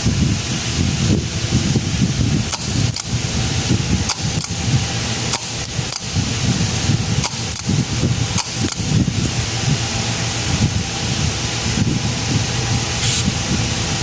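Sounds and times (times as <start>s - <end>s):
wind rumble on microphone: 0.0s - 14.0s
metallic clicks and snaps: 2.5s - 3.1s, 4.1s - 4.6s, 5.3s - 6.1s.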